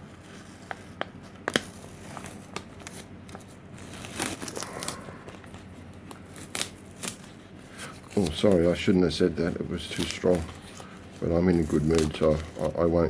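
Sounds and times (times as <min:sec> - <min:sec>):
plastic crinkling and crackling: 0:00.2 - 0:13.0
masking tape peeling: 0:01.5 - 0:09.0, 0:09.7 - 0:12.8.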